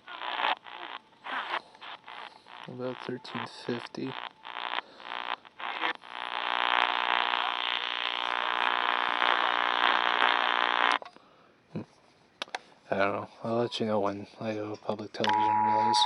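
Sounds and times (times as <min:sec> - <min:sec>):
choppy radio audio: 0:00.0 - 0:11.0, 0:15.2 - 0:16.0
harsh interference buzz: 0:04.0 - 0:11.0, 0:15.3 - 0:16.0.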